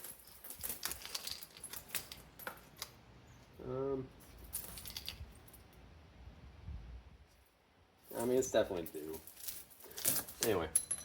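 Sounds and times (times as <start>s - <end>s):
metal chain clinking and rattling: 0.0s - 3.0s, 4.2s - 5.8s, 8.0s - 11.0s
man humming: 3.6s - 4.2s.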